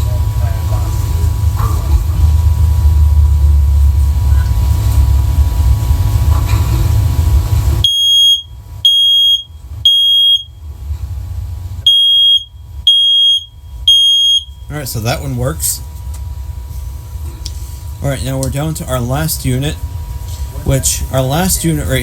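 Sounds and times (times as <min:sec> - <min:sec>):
low rumble: 0:00.0 - 0:22.0
smoke alarm beeps: 0:07.8 - 0:10.6, 0:11.8 - 0:14.8.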